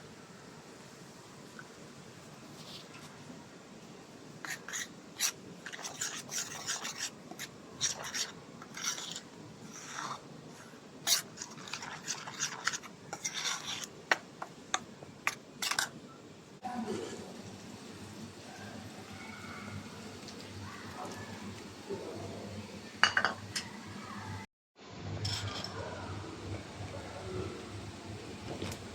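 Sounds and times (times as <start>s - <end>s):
scraping and rubbing: 4.4s - 14.3s, 15.3s - 15.9s
utensils and dishes clicking: 11.1s - 16.0s.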